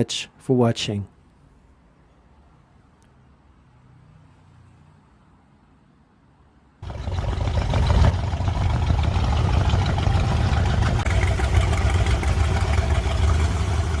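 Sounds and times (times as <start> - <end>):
engine rumbling: 6.8 - 14.0.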